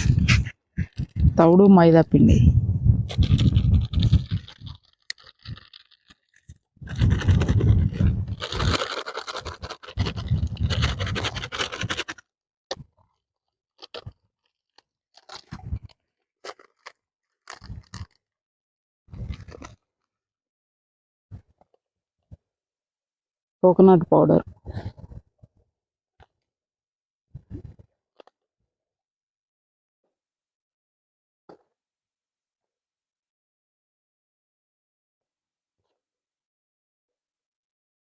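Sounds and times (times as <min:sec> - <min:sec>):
dry bait crunching and scraping: 0:03.1 - 0:13.0, 0:13.8 - 0:18.2, 0:19.2 - 0:19.9.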